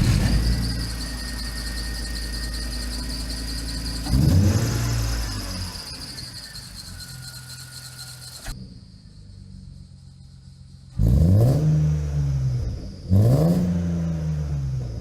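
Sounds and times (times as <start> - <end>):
high-pitched squeal: 0.0 - 9.4
car engine running: 0.0 - 15.0.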